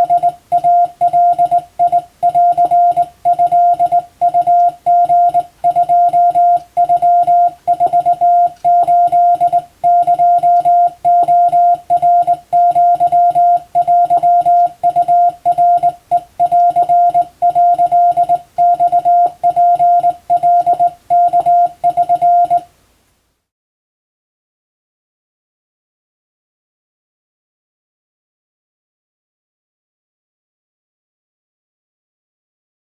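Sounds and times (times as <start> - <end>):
morse code tone: 0.0 - 22.7.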